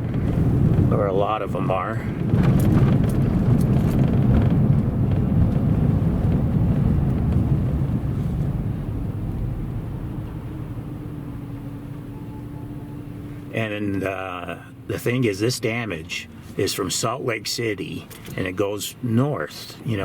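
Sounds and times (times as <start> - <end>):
engine and road noise rumble: 0.0 - 20.0.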